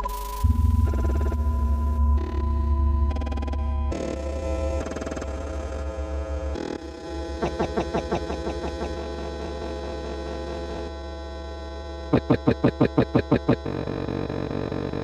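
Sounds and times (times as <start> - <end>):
low electronic hum: 0.0 - 15.0
short rising electronic blips: 12.1 - 13.7.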